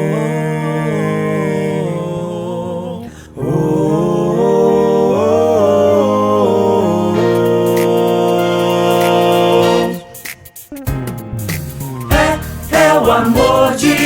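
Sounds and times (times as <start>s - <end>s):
instrumental music with bass line: 7.4s - 14.0s.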